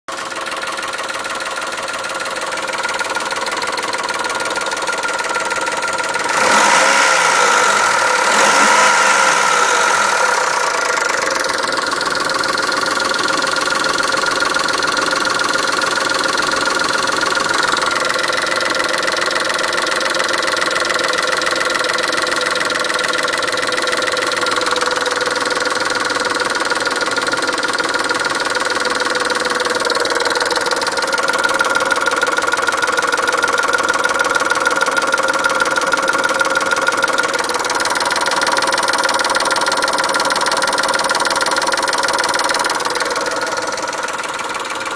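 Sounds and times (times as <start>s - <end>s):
car engine revving: 6.2s - 11.3s, 39.0s - 44.6s.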